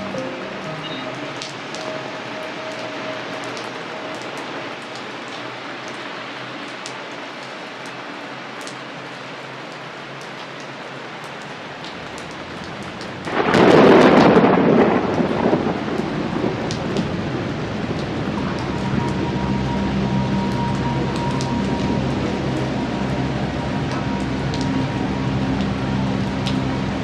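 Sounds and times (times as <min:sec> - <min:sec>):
steady rain falling: 0:00.0 - 0:27.0
raindrop ticks: 0:00.7 - 0:27.0
loud thunder clap: 0:13.3 - 0:18.4.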